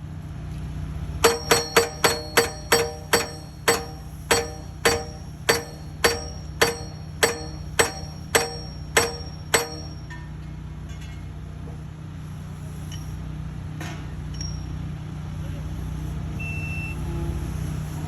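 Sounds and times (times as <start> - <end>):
post driver hammering metal post: 1.2 - 10.2.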